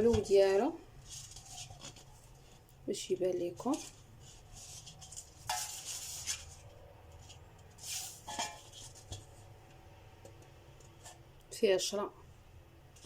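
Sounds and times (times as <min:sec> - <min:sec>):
rubbing and scraping handling noises: 0:00.0 - 0:02.8, 0:03.4 - 0:09.6.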